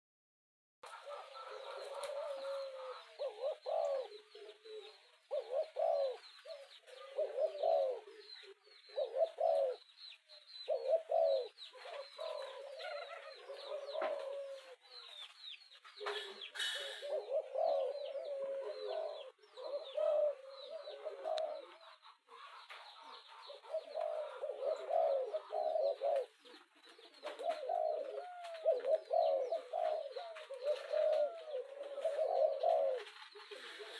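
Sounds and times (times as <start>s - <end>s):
doves cooing: 0.8s - 33.9s
small birds chirping: 0.8s - 33.9s.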